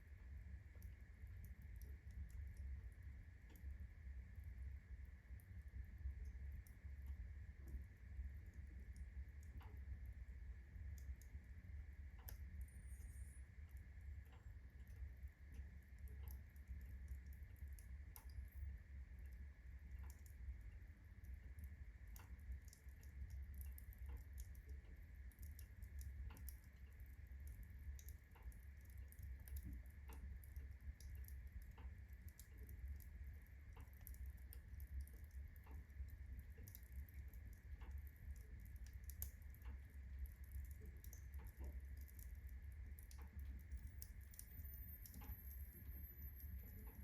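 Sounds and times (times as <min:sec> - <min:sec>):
low rumble of fire: 0:00.0 - 0:47.0
faint high whine: 0:11.8 - 0:16.0, 0:40.5 - 0:47.0.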